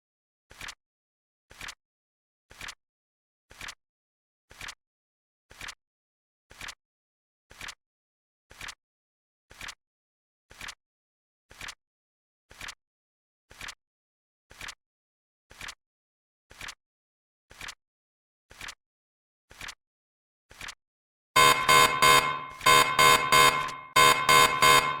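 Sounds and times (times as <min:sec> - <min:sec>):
alarm clock beeping: 0:21.4 - 0:25.0.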